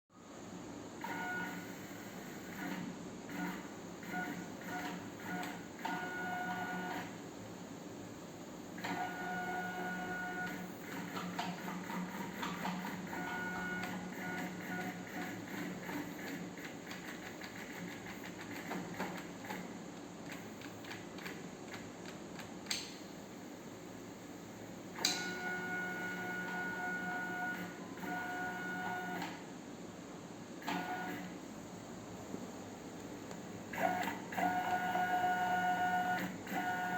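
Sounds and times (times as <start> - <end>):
sharp click: 25.0 - 25.3.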